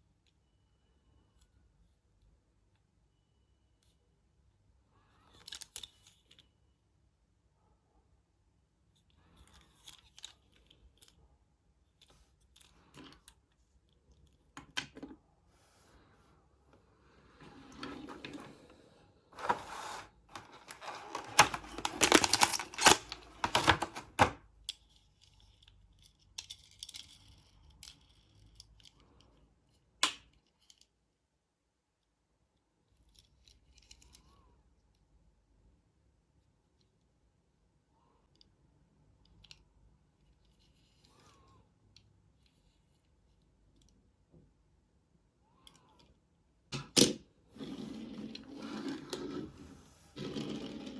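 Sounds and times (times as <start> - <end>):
cardboard and plastic tearing: 19.4 - 24.4.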